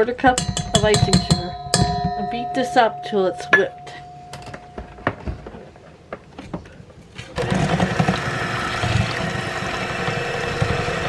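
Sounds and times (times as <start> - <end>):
electric mixer running: 7.4 - 11.0.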